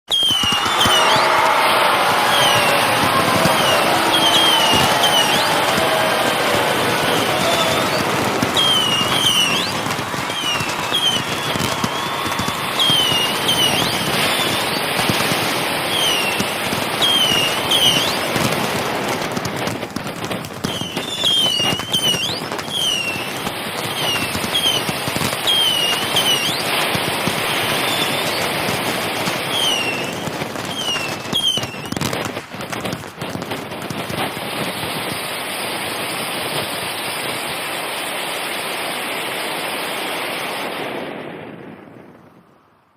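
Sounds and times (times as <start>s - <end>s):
high falling squeals: 0.1s - 18.4s
firecrackers crackling: 0.1s - 42.5s.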